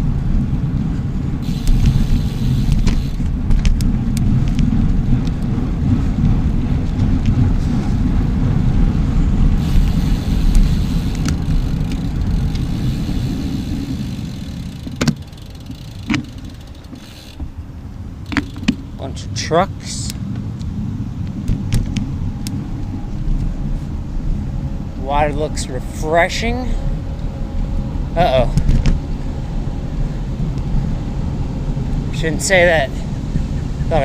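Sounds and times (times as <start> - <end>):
wind rumble on microphone: 0.0 - 34.0
bicycle clicks and ticks: 1.4 - 7.5, 9.5 - 19.2, 19.9 - 23.5.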